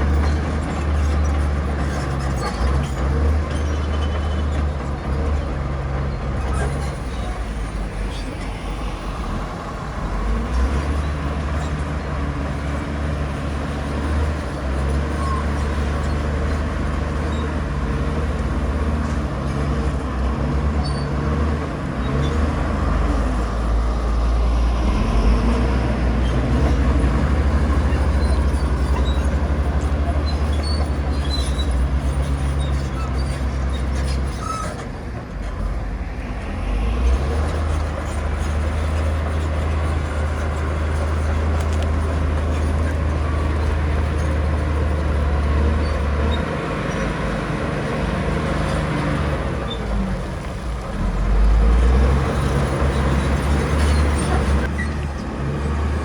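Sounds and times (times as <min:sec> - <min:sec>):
diesel engine droning under load: 0:00.0 - 0:56.0.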